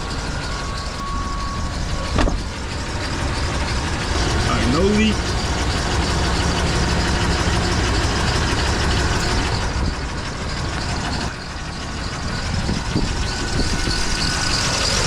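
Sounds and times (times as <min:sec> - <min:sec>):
pickup engine idling: 0:00.0 - 0:15.0.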